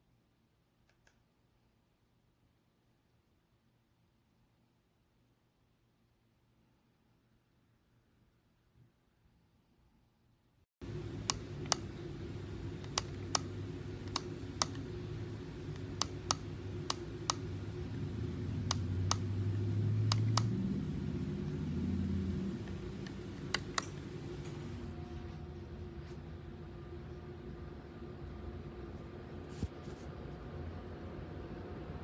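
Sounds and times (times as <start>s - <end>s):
steady low hum: 10.8s - 32.0s
sharp clicks: 11.2s - 11.9s, 12.8s - 14.9s, 20.1s - 20.5s.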